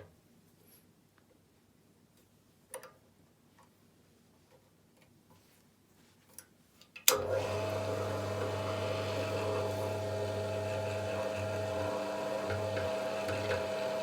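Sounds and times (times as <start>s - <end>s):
electric drill motor running: 7.1s - 14.0s.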